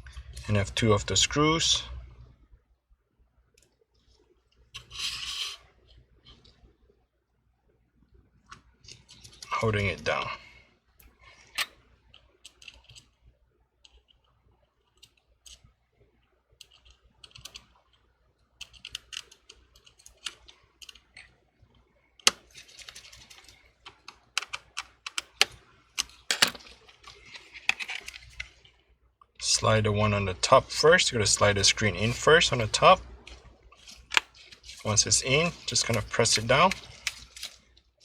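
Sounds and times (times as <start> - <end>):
small tools clicking on phone: 22.2 - 28.5.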